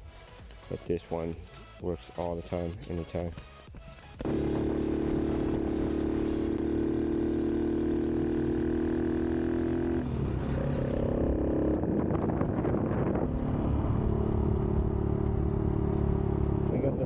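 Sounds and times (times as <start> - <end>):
motorcycle engine running: 3.8 - 17.0.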